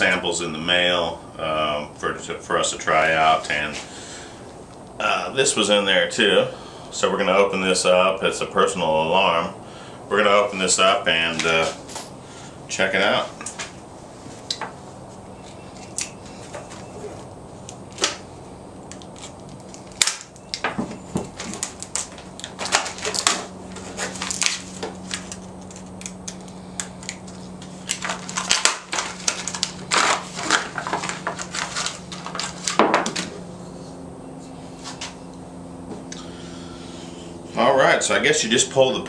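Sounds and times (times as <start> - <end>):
low steady hum: 0.0 - 39.0
packaging crackling and crinkling: 18.8 - 33.4.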